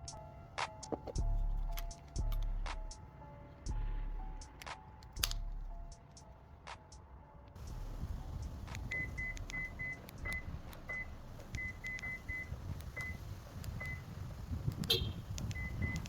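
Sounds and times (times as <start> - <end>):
low rumble: 7.6 - 12.8.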